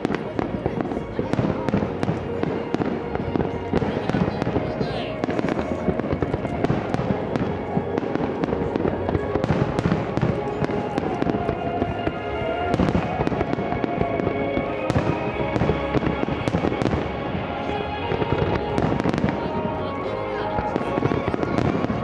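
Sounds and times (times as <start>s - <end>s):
distant fireworks bursting: 0.0s - 22.0s
music playing: 0.0s - 22.0s.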